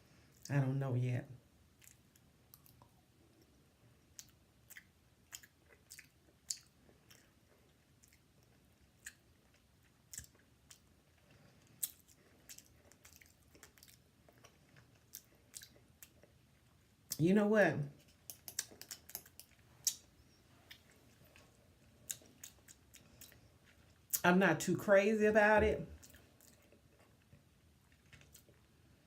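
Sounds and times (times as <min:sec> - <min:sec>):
person chewing with wet mouth clicks: 0:01.8 - 0:16.8, 0:18.1 - 0:24.2.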